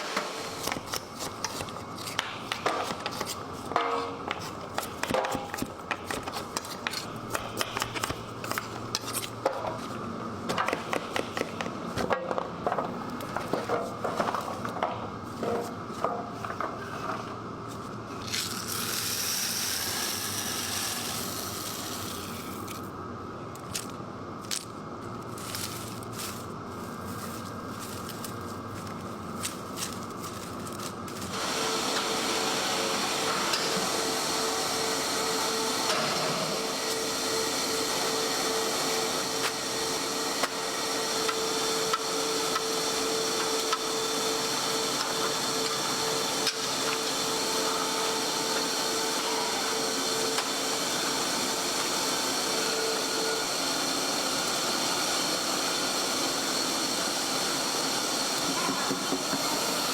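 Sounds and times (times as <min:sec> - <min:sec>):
meat-processing machine running: 0:17.8 - 0:22.9, 0:25.2 - 0:59.9.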